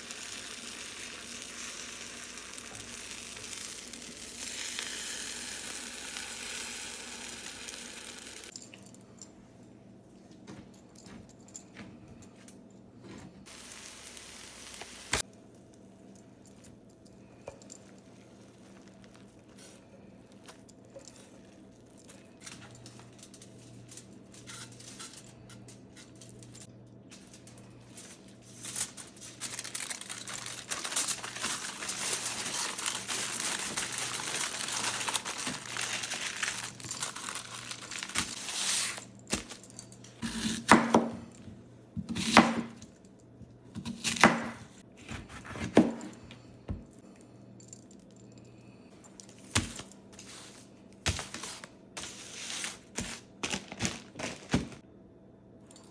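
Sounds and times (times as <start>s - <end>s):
hiss with fine crackle: 13.5s - 15.2s.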